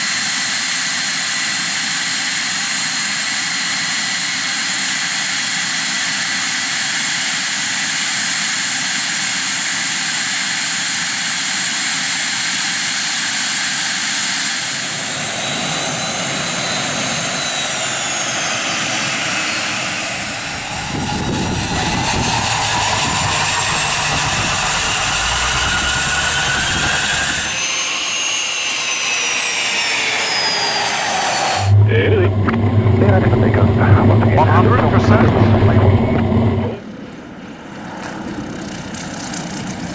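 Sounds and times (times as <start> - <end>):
jet engines whining: 14.3 - 39.9
jet exhaust rumble: 14.9 - 27.6, 31.0 - 39.9.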